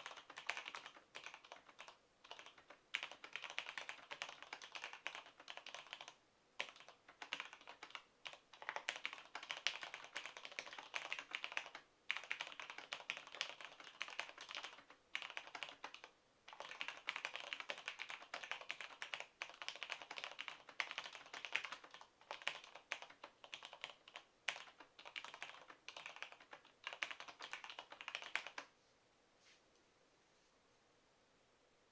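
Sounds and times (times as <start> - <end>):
typing on mechanical keyboard: 0.0 - 28.7.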